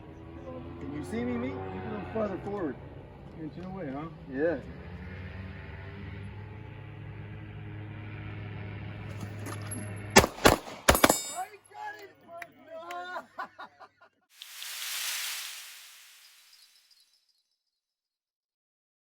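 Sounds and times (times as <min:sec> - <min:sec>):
pistol shots: 0:10.2 - 0:11.4
rushing whoosh: 0:14.4 - 0:16.9.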